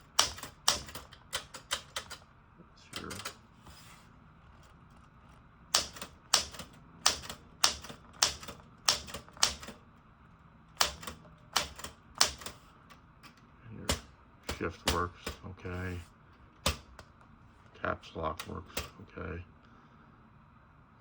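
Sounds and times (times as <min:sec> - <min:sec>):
typewriter keys clacking: 0:00.0 - 0:02.2, 0:02.9 - 0:03.4, 0:05.8 - 0:09.8, 0:10.8 - 0:12.6.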